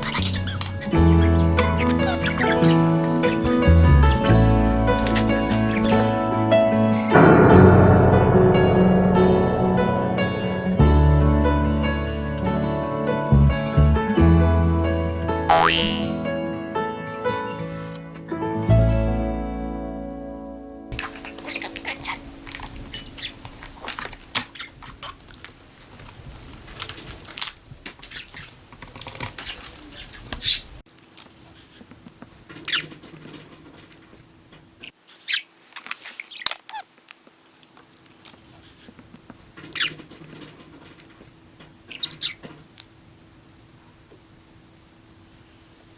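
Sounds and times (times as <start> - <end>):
budgerigar chirping: 0.0 - 6.1, 21.0 - 23.6.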